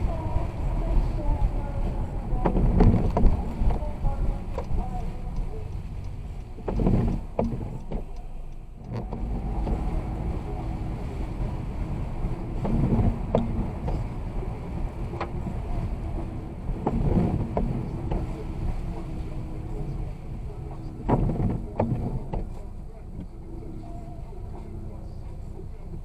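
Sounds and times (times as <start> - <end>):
car road and engine rumble: 0.0 - 26.0
short knocks: 6.4 - 8.2.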